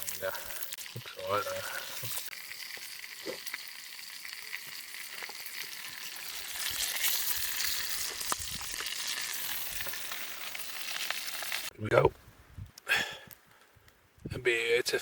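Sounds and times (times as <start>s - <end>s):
bacon sizzling in a pan: 0.0s - 11.7s.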